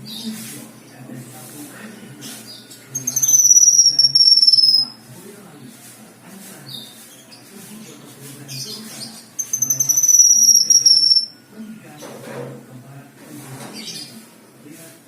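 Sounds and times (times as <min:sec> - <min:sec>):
soft short bird chirps: 0:02.5 - 0:05.0, 0:08.5 - 0:11.3
bird whistling falling pitch: 0:03.2 - 0:04.9, 0:09.4 - 0:11.3.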